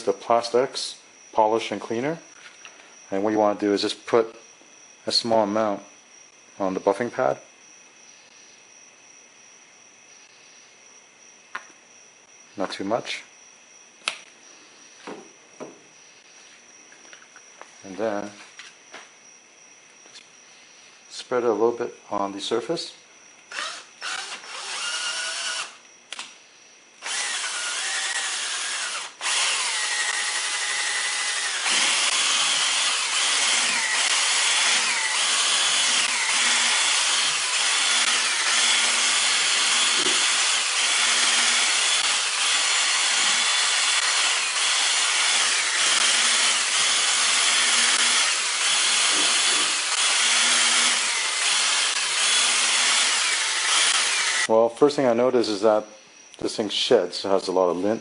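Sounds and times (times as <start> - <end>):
cordless drill motor whine: 23.5 - 26.2, 27.0 - 54.5.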